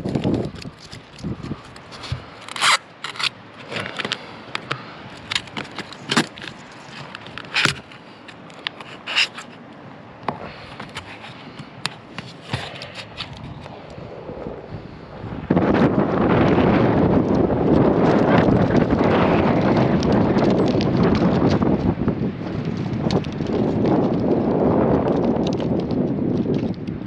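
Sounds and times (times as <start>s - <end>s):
scraping on metal roofing panels: 0.0s - 9.6s.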